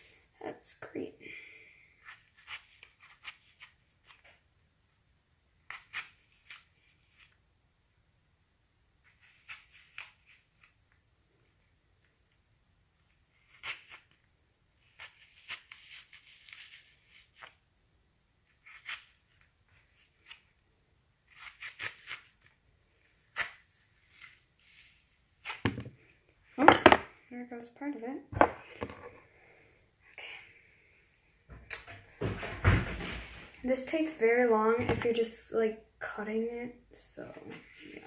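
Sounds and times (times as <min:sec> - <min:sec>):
knife cutting and scraping apple: 0:02.0 - 0:04.2, 0:05.7 - 0:07.4, 0:09.1 - 0:10.8, 0:13.0 - 0:17.7, 0:18.5 - 0:20.6, 0:21.2 - 0:25.7.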